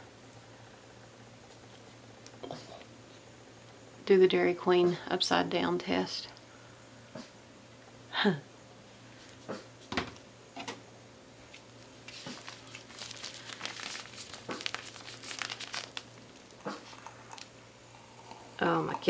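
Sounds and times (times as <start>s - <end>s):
plastic crinkling and rustling: 11.4s - 17.5s.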